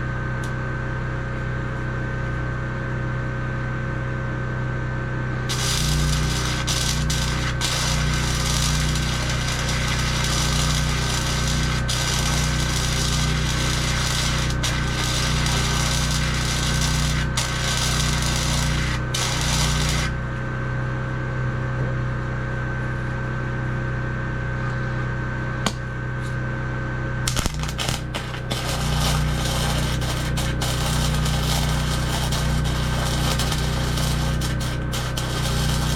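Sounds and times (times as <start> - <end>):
low steady hum: 5.2 - 21.2, 27.0 - 35.9
power tool on sheet metal: 5.5 - 20.2, 27.3 - 35.9.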